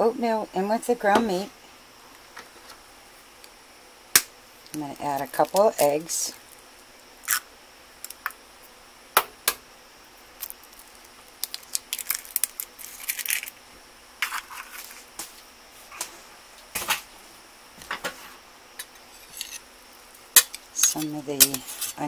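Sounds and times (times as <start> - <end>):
eggshells cracking against bowl: 4.2 - 8.4, 10.4 - 13.6.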